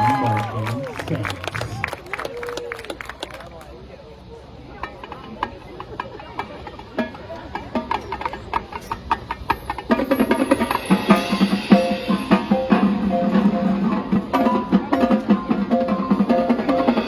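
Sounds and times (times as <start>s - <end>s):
sharp drum strokes: 9.4s - 17.0s
marching band playing: 9.7s - 17.0s.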